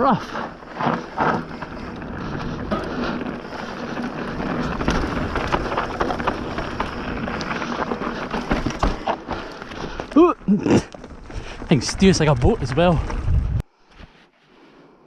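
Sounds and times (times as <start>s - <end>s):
tyres rolling on dirt and stones: 0.0s - 13.6s
bike knocking and clattering: 0.7s - 13.4s
wind on microphone: 12.5s - 13.7s.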